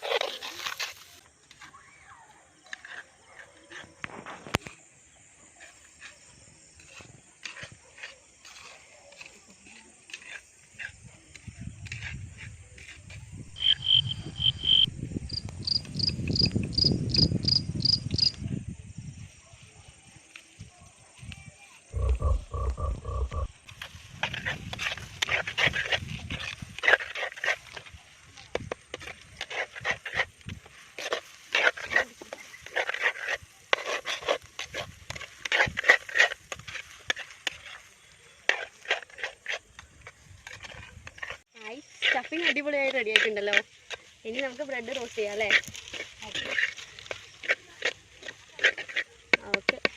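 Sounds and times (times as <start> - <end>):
small creature chirping: 22.0 - 23.5
spoon scraping in a pan: 22.0 - 49.4.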